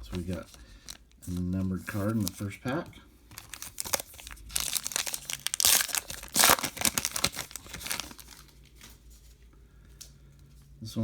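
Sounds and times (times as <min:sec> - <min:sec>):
wrapper tearing and crumpling: 0:00.2 - 0:02.4, 0:03.3 - 0:08.9.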